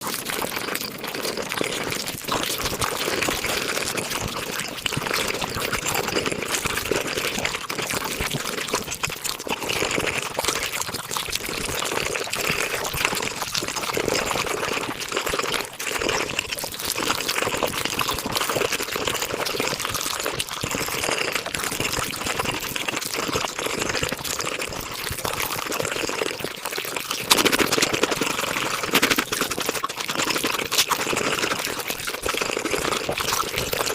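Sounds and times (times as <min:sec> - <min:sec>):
sped-up eating sounds: 0:00.0 - 0:33.9.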